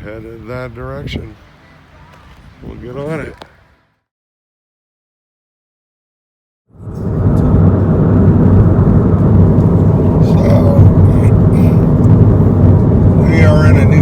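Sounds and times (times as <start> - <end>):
road noise: 0.0 - 4.1, 6.7 - 14.0
car engine droning: 6.7 - 14.0.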